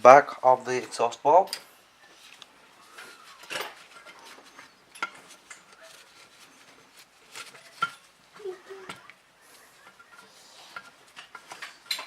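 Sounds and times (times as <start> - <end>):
metal tool clicks and knocks: 10.8 - 12.0.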